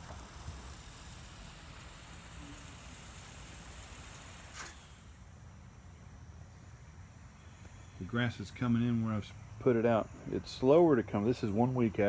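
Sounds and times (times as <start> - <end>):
sprinkler spraying hiss: 0.0 - 5.8.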